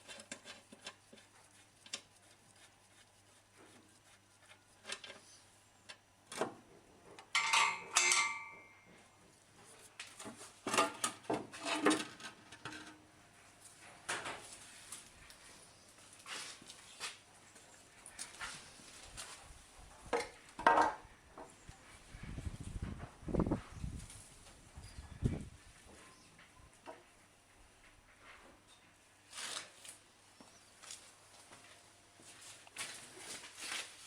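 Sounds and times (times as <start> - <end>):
metal tools clinking and clattering: 7.3 - 8.8
loud ringing metal clanks: 7.4 - 8.8.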